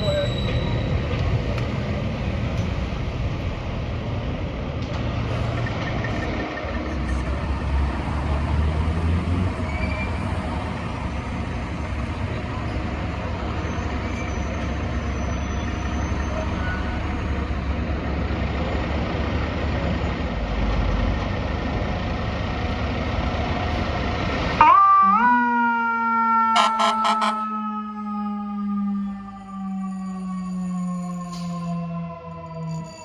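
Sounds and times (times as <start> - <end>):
diesel engine idling: 0.0 - 8.0, 16.4 - 24.7
city background noise: 0.0 - 33.0
siren rising in pitch: 24.6 - 33.0.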